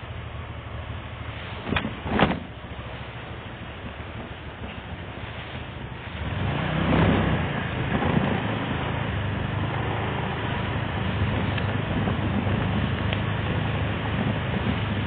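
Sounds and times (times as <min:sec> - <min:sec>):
road noise: 0:00.0 - 0:15.0
vehicle engine: 0:00.0 - 0:15.0.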